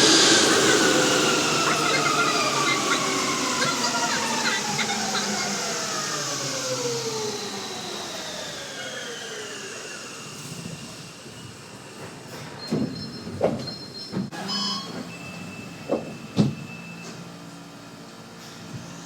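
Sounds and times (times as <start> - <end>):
train whine gliding down: 0.0 - 12.2.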